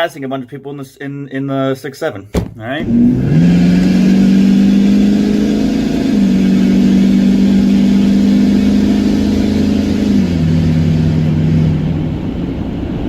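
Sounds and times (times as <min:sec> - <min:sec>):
diesel truck engine pulling hard: 0:02.8 - 0:13.0.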